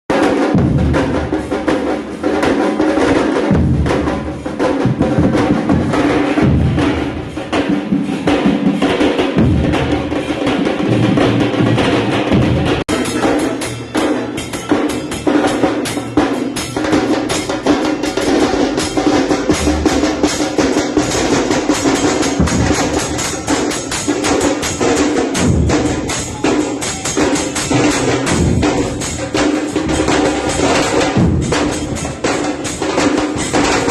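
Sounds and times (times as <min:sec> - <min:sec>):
percussion: 0:00.1 - 0:33.9
bass drums pounding: 0:00.4 - 0:07.6, 0:09.4 - 0:12.8, 0:17.5 - 0:24.8, 0:27.0 - 0:33.9.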